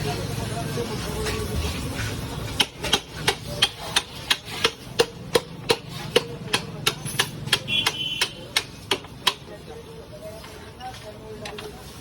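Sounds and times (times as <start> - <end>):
hammer striking metal: 2.6 - 9.4.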